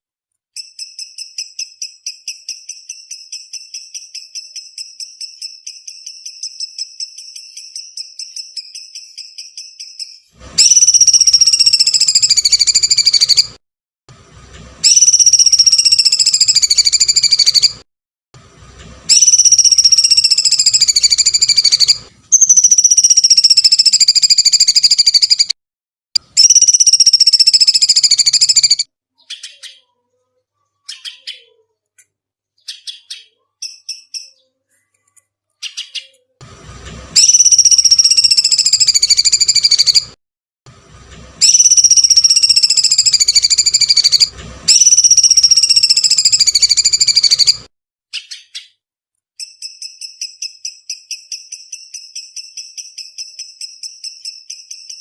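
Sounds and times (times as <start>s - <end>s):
songbird high chirps: 0.6s - 13.5s, 14.8s - 17.8s, 19.1s - 25.5s, 26.4s - 30.0s, 30.7s - 31.6s, 32.6s - 34.6s, 35.5s - 36.2s, 37.2s - 40.1s, 41.4s - 48.8s, 49.4s - 55.0s
shrill descending bird screeches: 10.0s - 13.5s, 14.8s - 17.8s, 19.1s - 25.5s, 26.4s - 29.8s, 37.2s - 40.1s, 41.4s - 47.6s.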